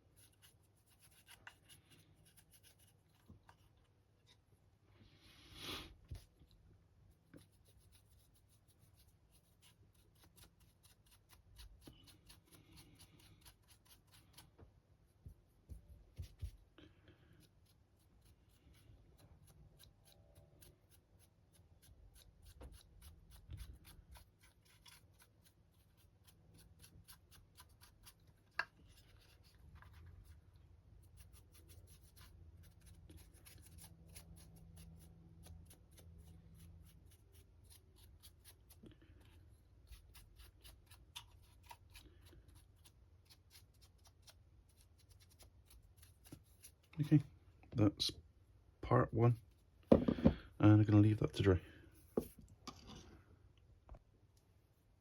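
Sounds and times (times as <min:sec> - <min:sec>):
paintbrush bristles scratching: 0:00.0 - 0:04.3, 0:07.1 - 0:14.5.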